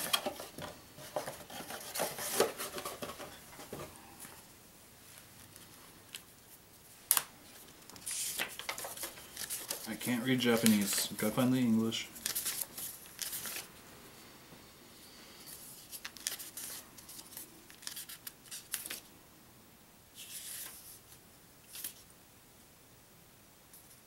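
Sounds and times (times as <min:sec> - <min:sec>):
paper pages turning: 0:05.4 - 0:13.7, 0:15.4 - 0:19.1, 0:20.2 - 0:22.0.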